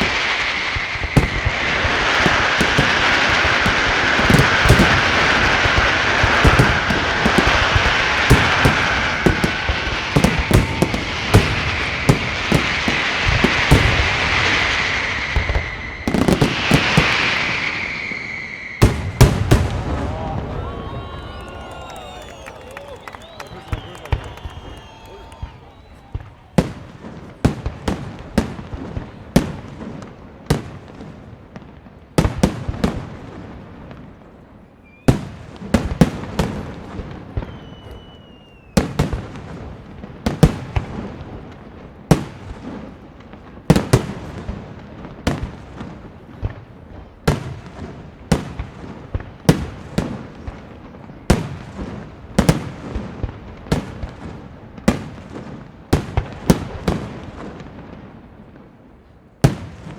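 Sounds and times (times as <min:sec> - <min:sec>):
fireworks bursting with echo: 0:00.0 - 0:59.9
faint whistling tone: 0:17.7 - 0:18.9, 0:20.1 - 0:26.8, 0:34.8 - 0:35.2, 0:37.3 - 0:38.8.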